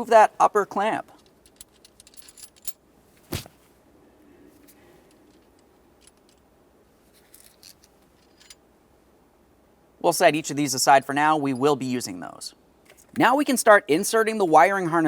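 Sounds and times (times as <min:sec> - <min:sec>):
small metal parts clicking: 0:01.2 - 0:02.8.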